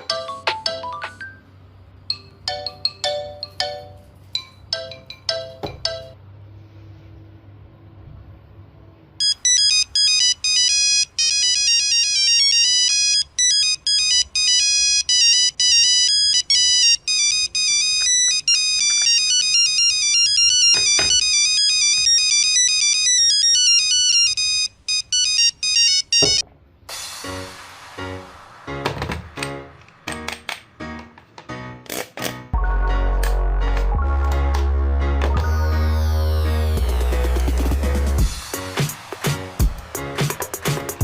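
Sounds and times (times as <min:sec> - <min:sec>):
phone ringtone melody: 0:00.0 - 0:01.5, 0:02.1 - 0:06.2, 0:09.2 - 0:26.4, 0:32.6 - 0:34.5.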